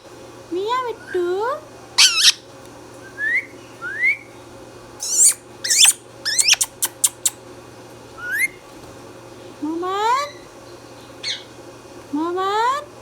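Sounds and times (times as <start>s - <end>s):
parakeet harsh high calls: 2.0s - 2.4s, 5.0s - 7.4s, 8.2s - 8.6s
parakeet rising whistles: 2.0s - 2.4s, 3.0s - 4.3s, 5.0s - 7.4s, 8.2s - 8.6s
sharp bird chirps: 2.0s - 2.4s, 5.0s - 7.4s.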